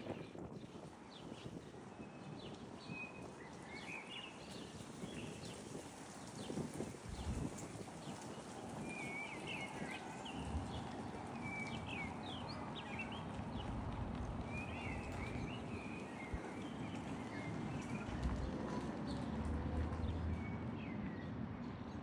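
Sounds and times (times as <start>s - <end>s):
low background rumble: 13.3s - 15.6s
small birds chirping: 14.4s - 18.1s.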